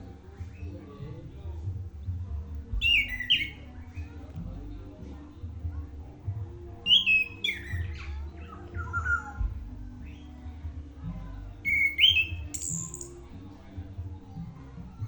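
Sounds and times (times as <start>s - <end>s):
thrush singing whistled notes: 2.8s - 3.6s, 6.9s - 9.4s, 11.6s - 13.1s.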